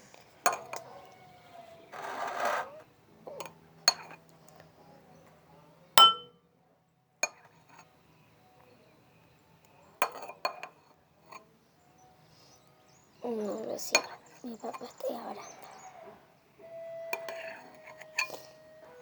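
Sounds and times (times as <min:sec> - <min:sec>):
kitchen utensils clinking: 0:06.0 - 0:06.3.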